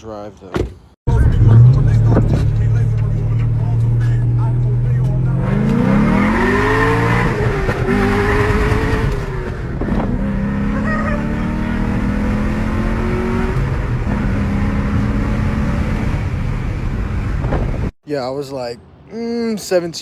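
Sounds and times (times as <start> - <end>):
car engine accelerating hard: 0.6 - 17.9.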